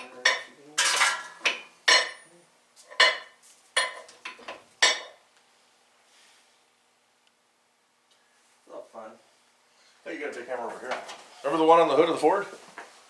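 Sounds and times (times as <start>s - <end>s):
metal tools clanking: 0.0s - 2.3s.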